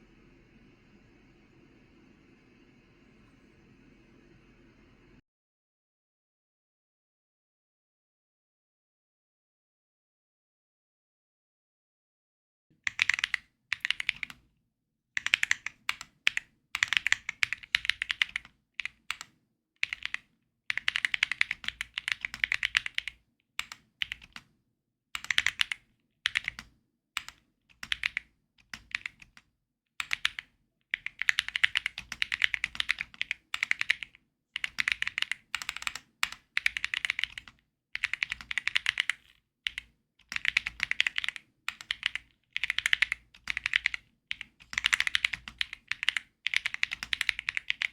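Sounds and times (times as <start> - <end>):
mechanical keyboard typing: 12.8 - 14.4, 15.2 - 24.5, 25.2 - 47.9.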